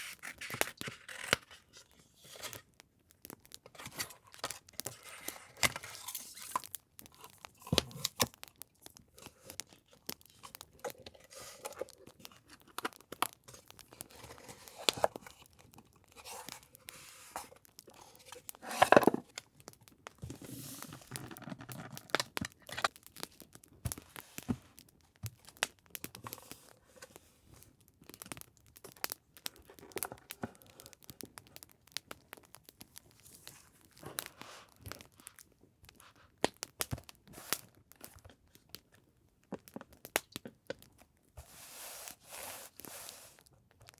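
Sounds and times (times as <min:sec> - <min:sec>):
paper crinkling and rustling: 0:00.0 - 0:02.8, 0:03.6 - 0:19.5, 0:20.1 - 0:27.3.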